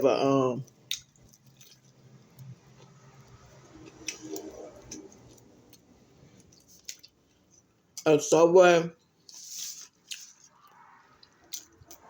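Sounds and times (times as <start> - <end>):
mouth chewing sounds: 0.6 - 7.3.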